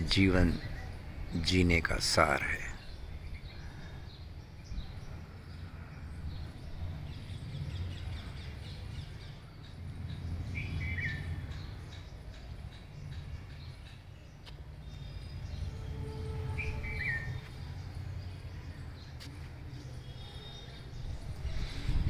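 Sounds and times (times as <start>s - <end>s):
birds chirping and calling: 0.0s - 22.0s
low steady rumble: 4.7s - 19.9s.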